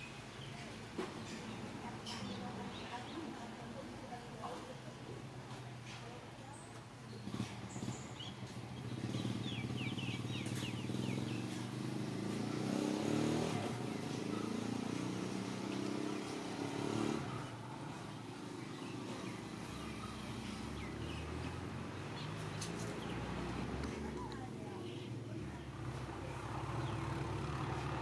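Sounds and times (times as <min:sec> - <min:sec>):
small engine passing by: 0:07.1 - 0:28.0.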